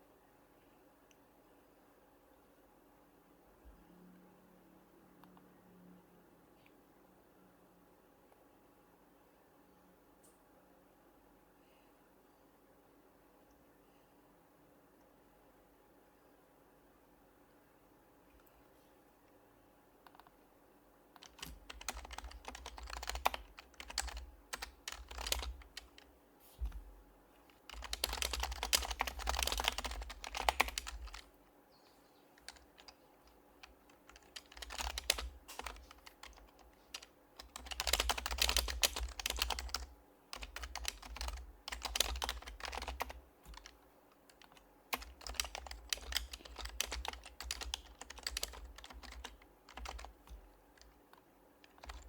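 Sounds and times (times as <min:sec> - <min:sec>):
keyboard typing: 0:21.2 - 0:31.3, 0:32.4 - 0:52.0.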